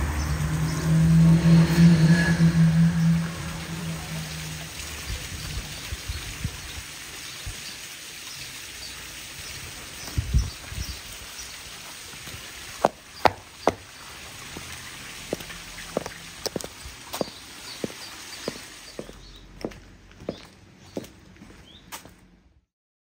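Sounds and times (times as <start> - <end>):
outdoor hiss: 3.3 - 20.3
heels clicking on pavement: 12.2 - 22.2.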